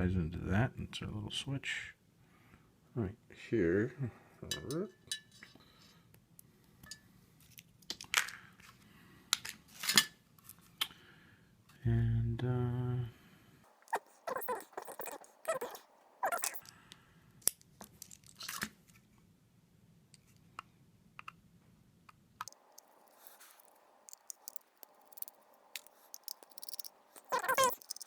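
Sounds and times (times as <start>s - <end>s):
clicks and scrapes of hand tools: 22.5s - 28.0s.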